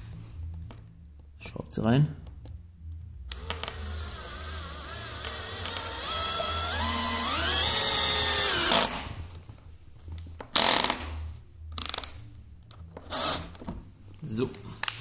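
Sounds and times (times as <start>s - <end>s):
drill motor whining: 3.3s - 9.0s.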